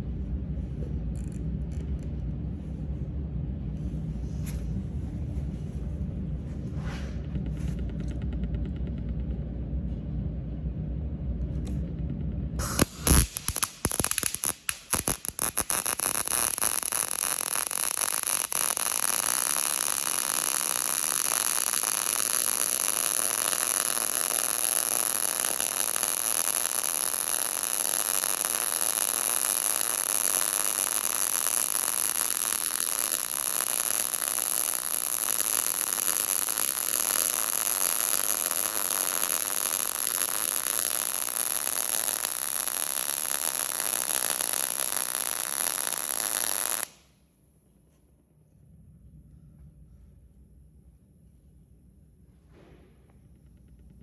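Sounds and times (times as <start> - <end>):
welding arc hissing: 12.6 - 47.0.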